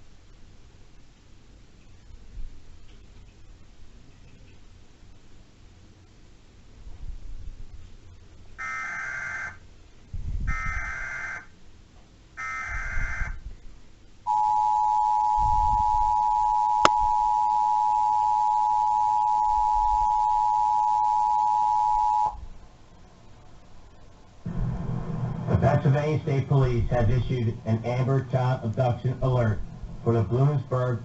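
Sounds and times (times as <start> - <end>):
two-tone attention signal: 14.3 - 22.4.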